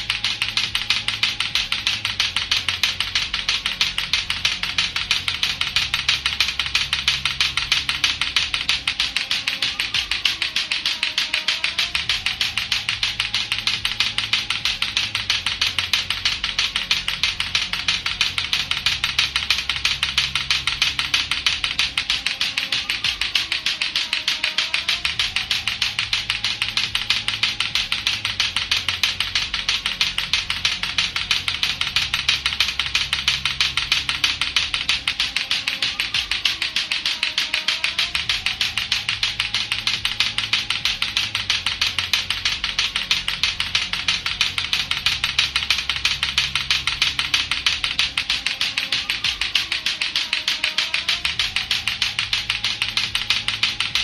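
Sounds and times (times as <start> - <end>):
clacker toy balls clacking: 0.0 - 54.0
faint low repeating sound: 0.0 - 54.0.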